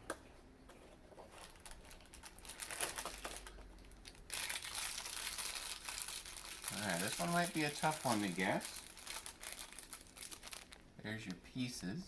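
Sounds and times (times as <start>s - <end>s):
packaging clicks and rustling: 1.2s - 10.8s
plastic bag crinkling: 1.3s - 10.9s.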